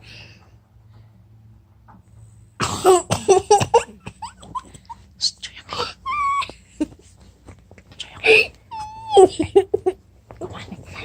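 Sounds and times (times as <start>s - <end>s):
quiet chuckles and breaths: 3.9s - 11.0s
person laughing loudly: 9.0s - 10.0s.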